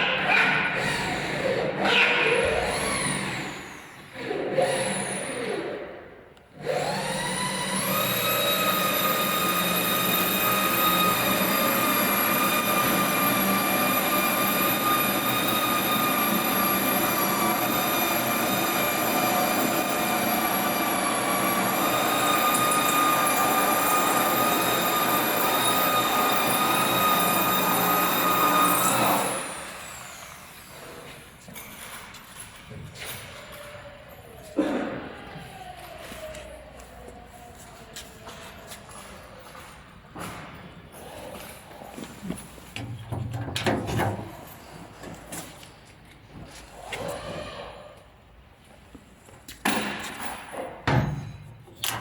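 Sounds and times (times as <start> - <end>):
electric spindles whining: 6.6 - 32.4.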